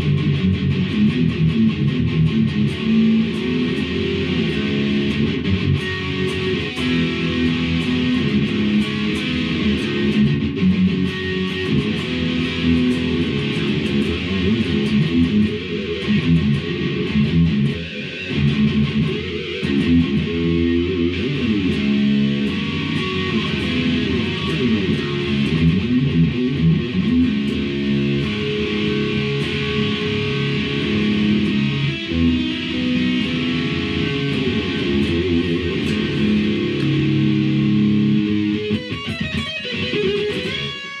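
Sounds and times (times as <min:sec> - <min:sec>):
electric guitar riffs: 0:00.0 - 0:41.0.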